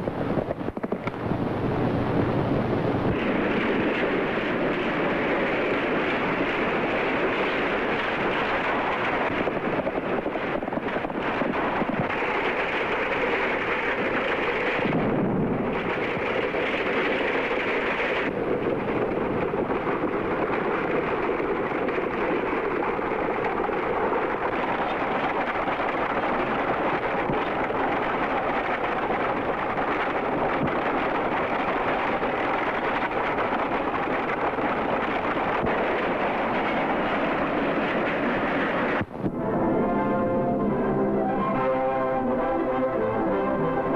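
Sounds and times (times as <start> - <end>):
loud soundtrack rumbling: 39.1 - 43.9.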